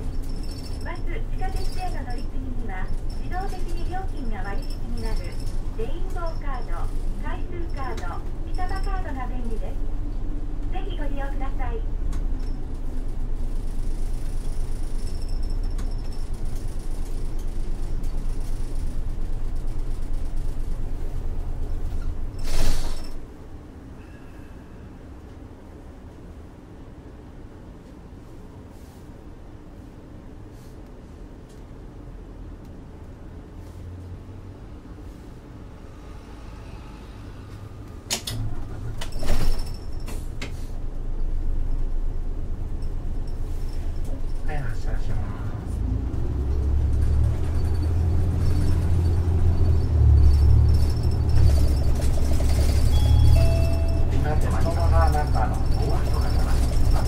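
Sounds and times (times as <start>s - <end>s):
bus diesel engine rumbling: 0.0s - 57.0s
loud hiss of air: 22.4s - 23.1s
bus doors clunking: 37.6s - 44.5s, 46.2s - 57.0s.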